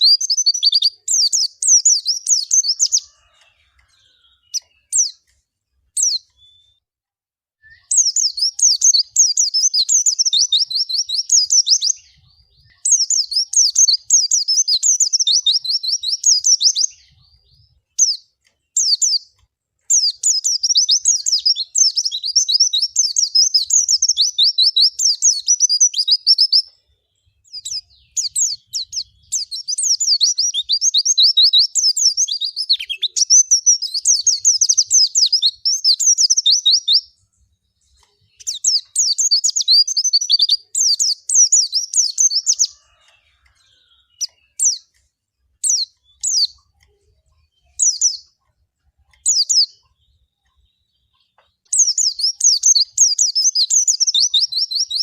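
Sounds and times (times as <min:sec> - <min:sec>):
bird twittering: 0:19.9 - 0:26.7, 0:27.5 - 0:37.1, 0:38.0 - 0:44.9.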